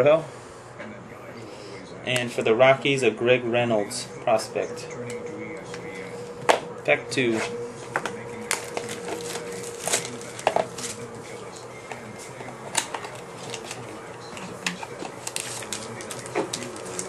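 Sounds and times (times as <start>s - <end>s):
card pack opened and handled: 8.4s - 11.0s, 12.7s - 17.0s.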